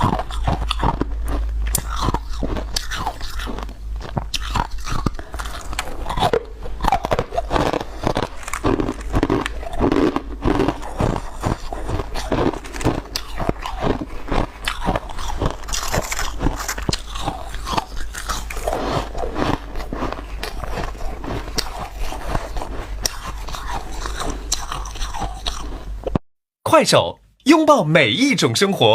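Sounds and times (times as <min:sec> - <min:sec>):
crunchy chewing of shaved ice: 0:00.0 - 0:26.1.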